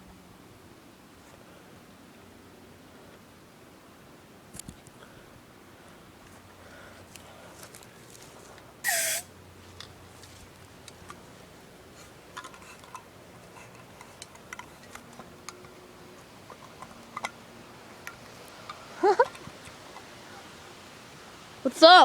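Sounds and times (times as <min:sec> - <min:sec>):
faint scattered clicks: 0:12.3 - 0:20.2.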